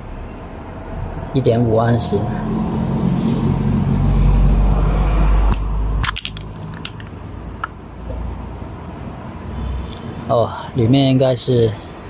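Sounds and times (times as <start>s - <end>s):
low rumble: 0.6s - 6.1s.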